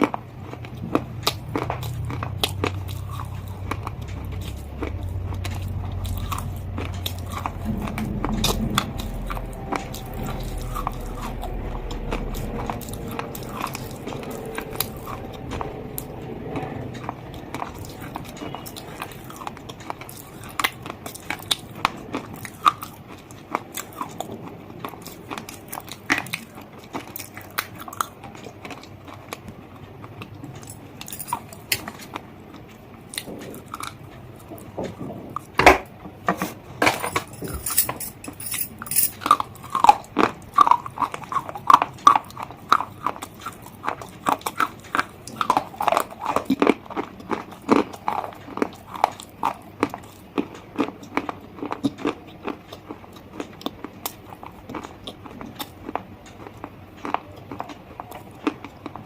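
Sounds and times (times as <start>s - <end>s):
crunchy chewing: 0.0s - 35.6s, 39.1s - 59.0s
low rumble: 0.3s - 26.1s.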